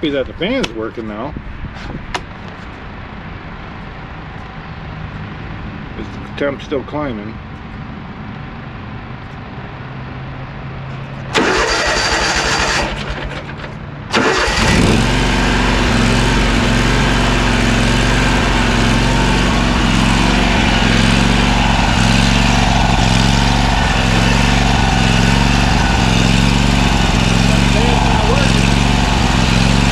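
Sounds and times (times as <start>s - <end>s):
mower engine cranking: 11.3s - 29.9s
mower engine running: 11.3s - 29.9s.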